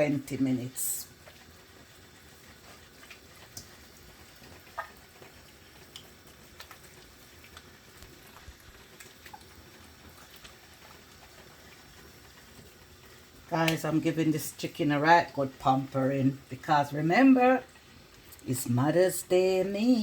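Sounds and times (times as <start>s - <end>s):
wet clicks and squelches of hands: 3.0s - 3.8s, 4.7s - 9.6s, 13.6s - 13.9s.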